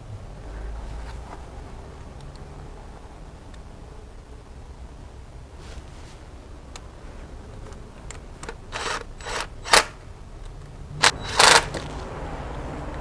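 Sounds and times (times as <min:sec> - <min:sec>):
tools clicking and scraping: 0:08.4 - 0:12.0.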